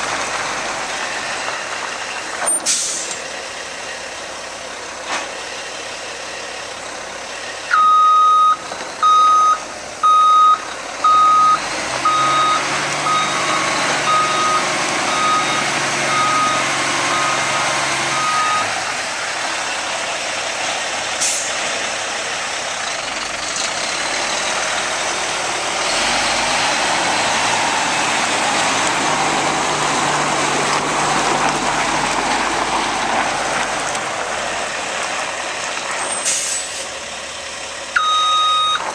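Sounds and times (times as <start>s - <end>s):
diesel truck engine running: 0.0s - 38.9s
truck backup alarm beeping: 7.7s - 18.8s, 38.0s - 38.9s.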